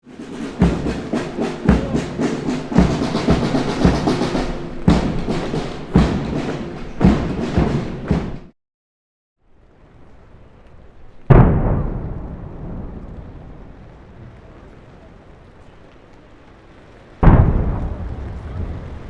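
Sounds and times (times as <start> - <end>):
brass band playing a march: 0.0 - 8.5
heavy bass drum beats: 0.0 - 8.5.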